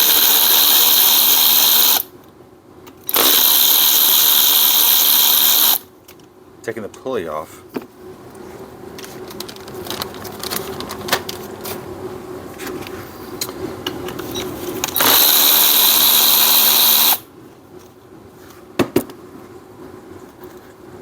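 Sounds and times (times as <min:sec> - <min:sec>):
power tool running: 0:00.0 - 0:02.1, 0:03.1 - 0:05.8, 0:15.0 - 0:17.2.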